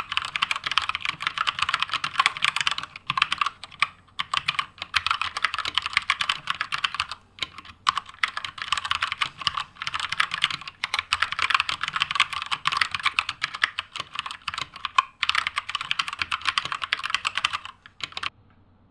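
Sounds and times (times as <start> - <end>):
mechanical keyboard typing: 0.0 - 18.3.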